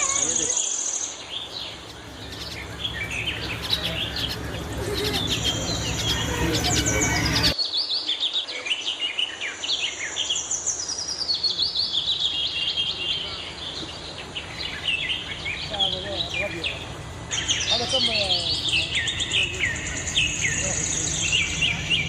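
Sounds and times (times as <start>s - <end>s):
caged birds chirping and trilling: 0.0s - 22.0s
murmur of voices: 2.0s - 7.6s, 12.8s - 22.0s
low hum: 11.2s - 22.0s.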